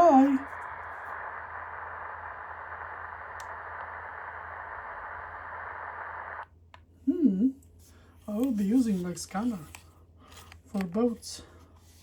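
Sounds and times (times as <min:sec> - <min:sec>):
radio static hiss: 0:00.0 - 0:06.5.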